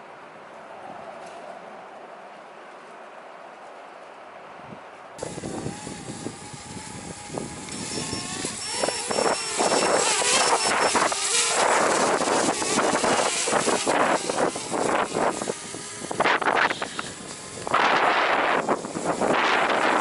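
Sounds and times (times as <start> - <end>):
wind buffeting microphone: 4.5 - 20.0
drone motors buzzing: 5.2 - 20.0.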